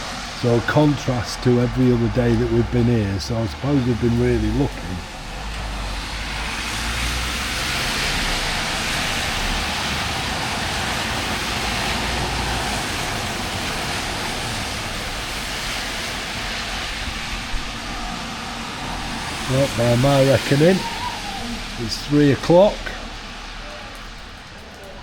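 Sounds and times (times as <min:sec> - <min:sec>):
heavy rain hiss: 0:00.0 - 0:25.0
low rumble: 0:12.2 - 0:25.0.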